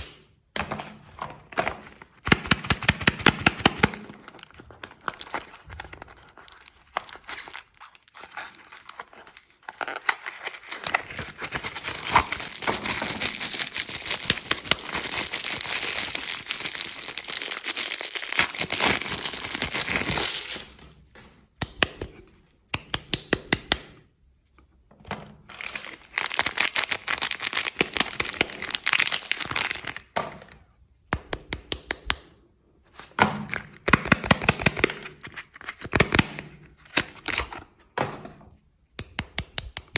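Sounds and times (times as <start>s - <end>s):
wrapping crinkling and tearing: 3.9s - 20.9s, 25.5s - 30.1s.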